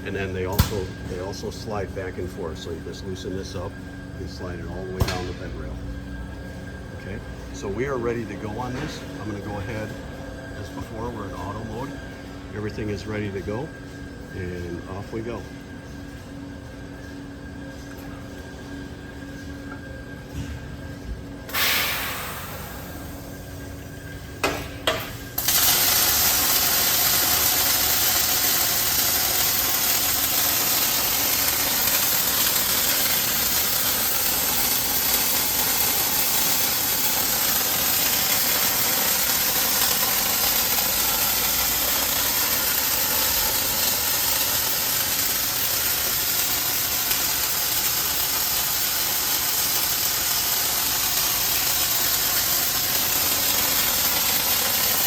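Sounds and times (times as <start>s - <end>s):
welding hiss: 21.5s - 23.6s, 24.4s - 55.0s.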